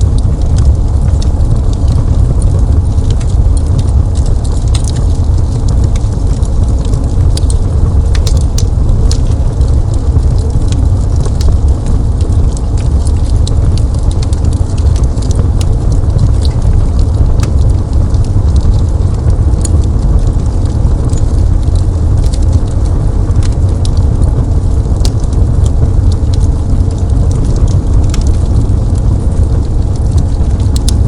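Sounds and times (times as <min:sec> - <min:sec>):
fire crackles and pops: 0:00.0 - 0:31.0
fireplace fire rumbling: 0:00.0 - 0:31.0.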